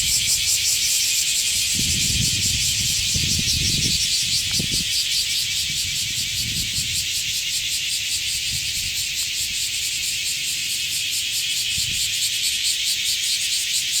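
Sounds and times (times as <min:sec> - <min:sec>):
cicadas buzzing chorus: 0:00.0 - 0:14.0.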